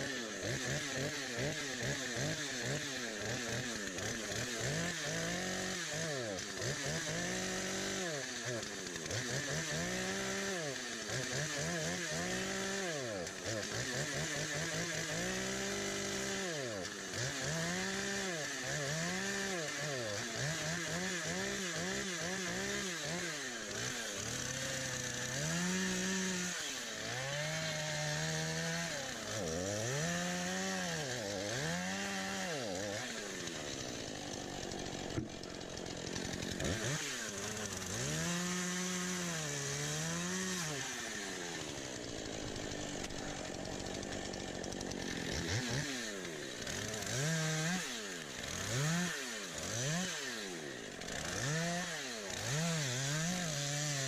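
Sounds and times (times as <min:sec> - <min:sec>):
chainsaw cutting a log: 0:00.0 - 0:54.0.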